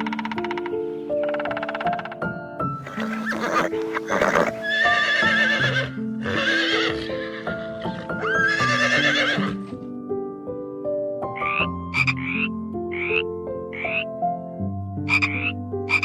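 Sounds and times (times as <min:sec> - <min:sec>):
background music with held notes: 0:00.0 - 0:16.0
horse whinnying: 0:02.9 - 0:09.8.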